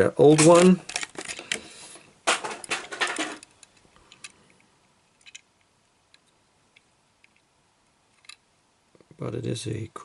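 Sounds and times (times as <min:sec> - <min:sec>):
packaging rustling: 0:00.2 - 0:03.7.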